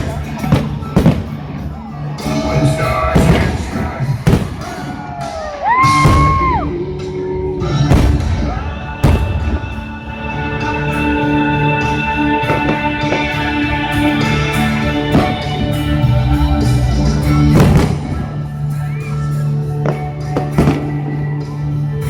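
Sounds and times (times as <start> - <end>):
firework bangs: 0.0 - 1.6, 2.7 - 6.6, 7.9 - 9.9, 17.5 - 18.4, 19.9 - 21.1
music over stadium loudspeakers: 0.0 - 22.0.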